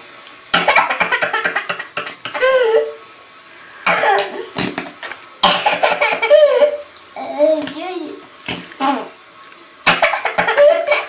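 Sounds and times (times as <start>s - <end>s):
child laughing: 0.6s - 3.0s, 5.7s - 6.8s, 9.9s - 11.0s
sputtering fart-like noise: 3.9s - 6.1s.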